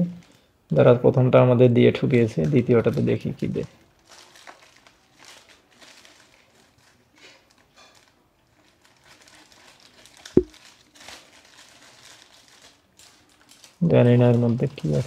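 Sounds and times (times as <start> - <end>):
plastic packaging crinkling: 2.1 - 15.0.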